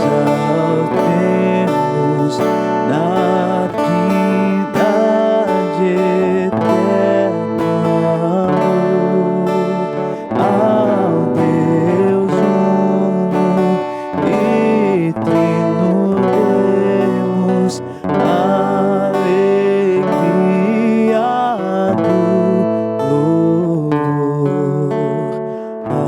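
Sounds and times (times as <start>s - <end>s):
person singing: 0.0s - 26.0s
strummed acoustic guitar: 0.0s - 26.0s.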